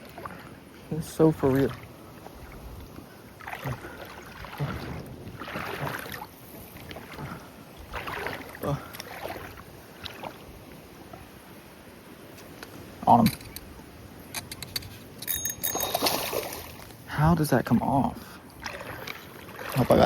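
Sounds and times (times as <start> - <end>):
wind gusting over microphone: 3.7 - 8.0.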